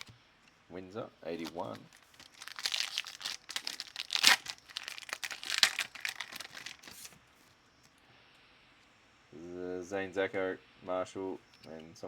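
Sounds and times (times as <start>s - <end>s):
foil pack crinkling and tearing: 1.4s - 7.2s.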